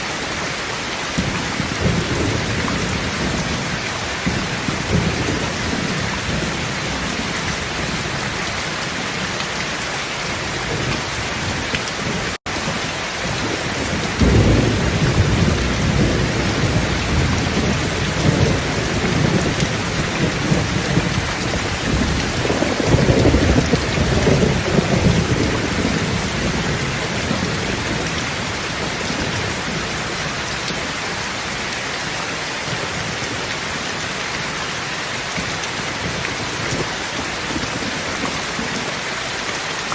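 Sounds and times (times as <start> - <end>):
heavy rain hiss: 0.0 - 39.7
rolling thunder rumbles: 1.2 - 9.4, 10.3 - 31.2.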